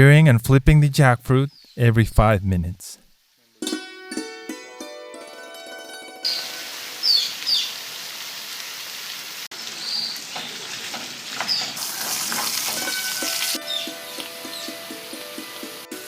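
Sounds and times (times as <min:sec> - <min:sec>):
food sizzling in oil: 0:03.2 - 0:16.0
high squeaks: 0:12.0 - 0:14.7.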